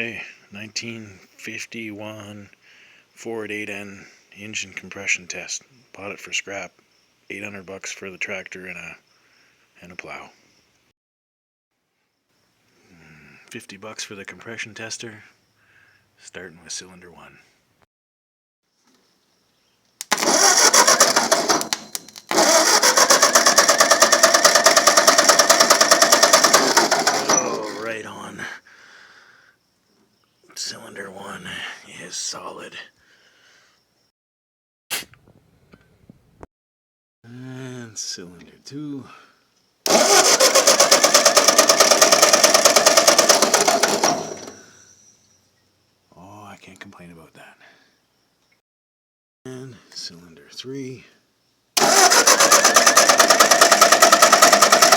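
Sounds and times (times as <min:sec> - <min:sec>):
engine cranked by starter: 0:20.0 - 0:28.0, 0:39.9 - 0:44.7, 0:51.8 - 0:54.9.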